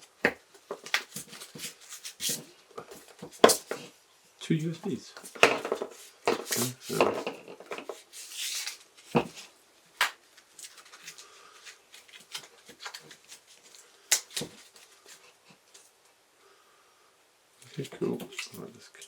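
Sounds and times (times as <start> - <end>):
packaging rustling: 10.2 - 15.2.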